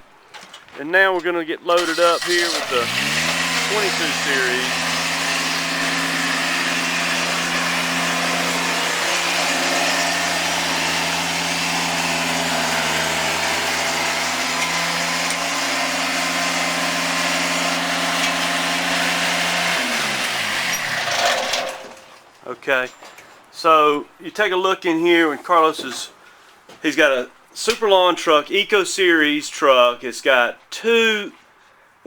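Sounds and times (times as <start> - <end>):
engine spinning down: 1.8 - 21.9
mower engine running: 1.8 - 22.2.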